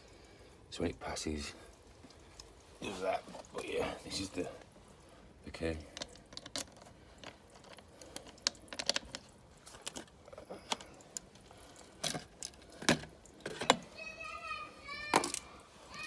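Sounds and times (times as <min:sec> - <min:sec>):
small clicks and light taps: 0:05.9 - 0:15.6.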